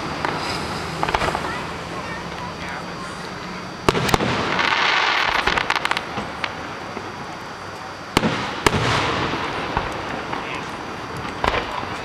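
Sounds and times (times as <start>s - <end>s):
crackling fireworks pops: 0.0s - 12.0s
fireworks bangs: 0.0s - 12.0s.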